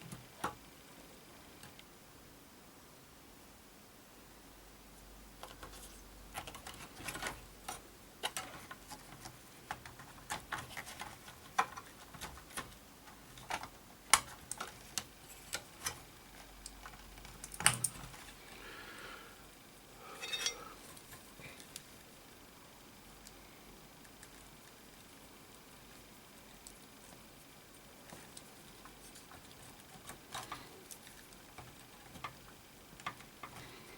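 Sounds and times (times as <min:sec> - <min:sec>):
faint low hum: 0:00.0 - 0:33.9
small parts clicking and tapping: 0:05.4 - 0:18.4, 0:28.0 - 0:33.9.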